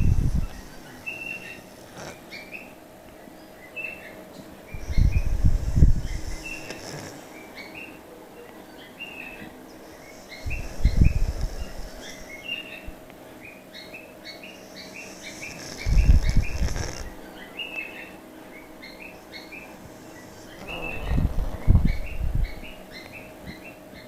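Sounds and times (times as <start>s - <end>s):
cat snoring: 0.0s - 2.6s, 4.8s - 7.4s, 9.8s - 12.4s, 15.0s - 17.2s, 19.8s - 23.0s
small birds chirping: 0.0s - 24.0s.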